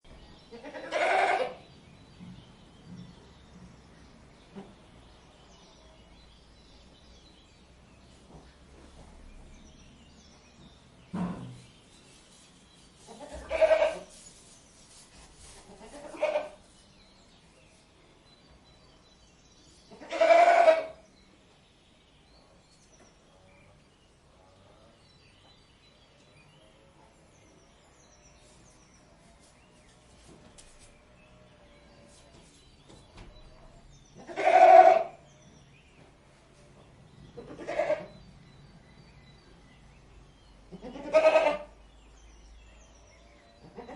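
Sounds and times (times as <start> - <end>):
faint background noise: 0.0 - 43.9
goat bleating: 0.6 - 1.6, 13.1 - 14.1, 15.7 - 16.6, 19.9 - 21.0, 34.2 - 35.2, 37.4 - 38.2, 40.7 - 41.7.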